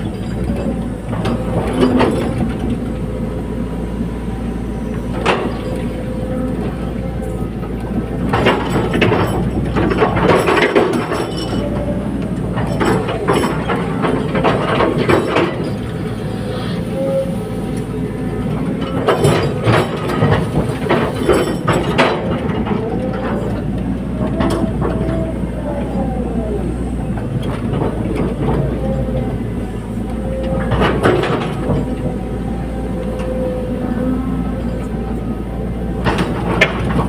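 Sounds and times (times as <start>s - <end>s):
excavator diesel engine: 0.0s - 37.0s
hydraulic whine: 0.0s - 37.0s
metallic clanks and knocks: 8.2s - 16.0s, 18.7s - 25.3s, 36.0s - 37.0s.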